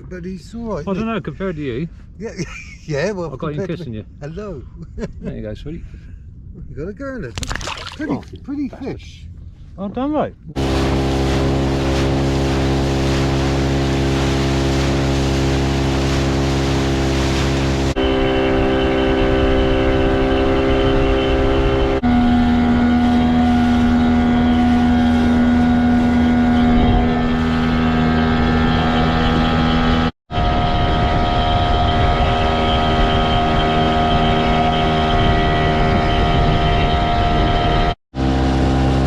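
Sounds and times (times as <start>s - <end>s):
wind noise: 0.0s - 38.0s
water noise: 7.3s - 9.0s, 10.4s - 39.0s
outboard motor running: 10.5s - 39.0s.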